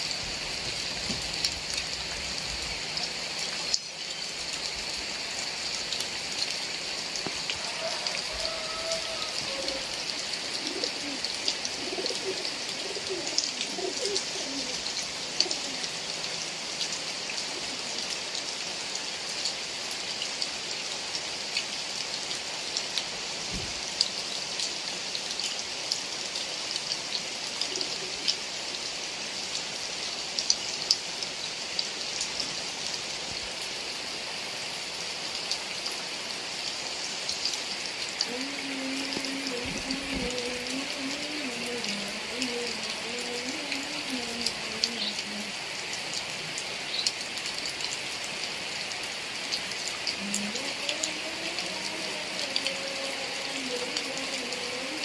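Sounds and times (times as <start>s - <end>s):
heavy rain falling: 0.0s - 55.0s
faint low cooing calls: 7.3s - 16.2s, 27.4s - 28.7s, 38.2s - 45.7s, 50.1s - 55.0s.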